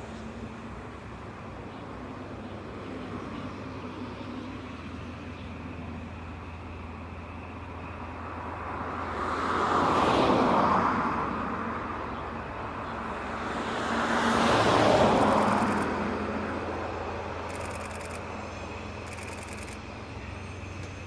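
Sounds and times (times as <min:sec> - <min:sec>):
vehicles passing: 0:00.0 - 0:21.0
low engine hum: 0:11.0 - 0:21.0.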